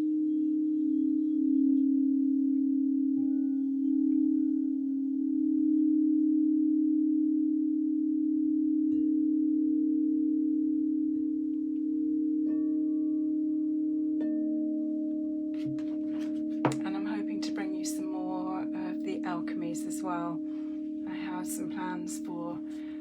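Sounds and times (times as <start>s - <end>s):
steady low bowl tone: 0.0s - 23.0s
singing bowls struck and ringing: 8.6s - 23.0s.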